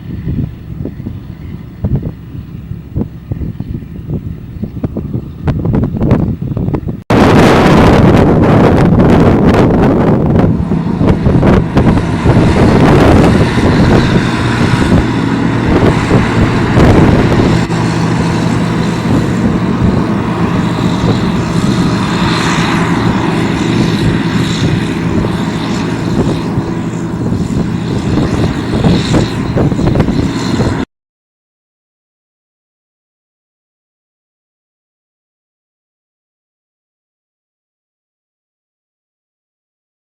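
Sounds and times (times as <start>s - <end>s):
noisy rumble: 0.0s - 30.9s
machinery engine running: 0.1s - 30.9s.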